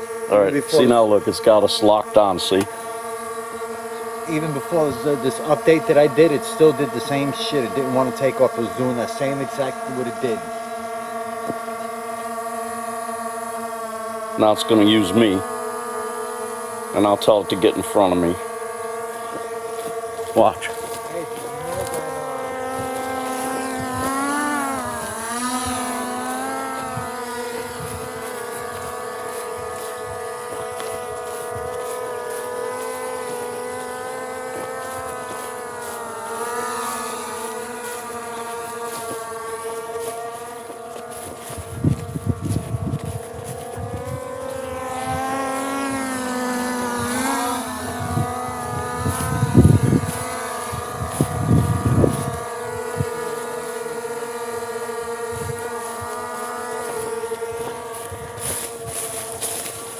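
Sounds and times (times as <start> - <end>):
drone propellers whining: 0.0 - 59.9
low rumbling wind buffets: 41.6 - 44.2, 48.0 - 52.4.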